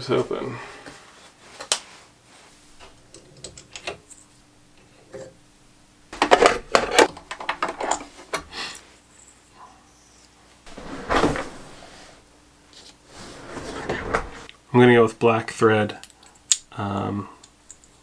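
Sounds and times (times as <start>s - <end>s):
hard objects clattering: 6.2s - 8.4s.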